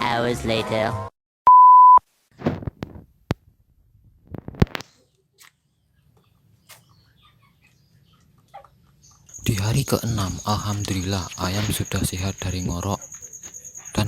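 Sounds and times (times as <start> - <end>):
steady electronic beep: 1.5 - 2.0.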